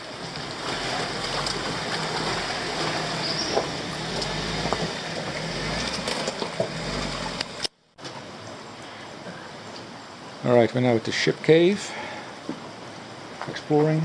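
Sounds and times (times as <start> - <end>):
vehicle engine rumble: 0.0 - 8.7.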